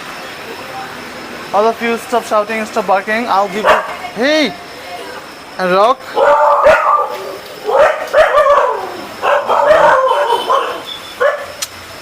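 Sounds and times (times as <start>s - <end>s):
dogs barking loudly: 3.5s - 4.2s, 6.0s - 11.6s.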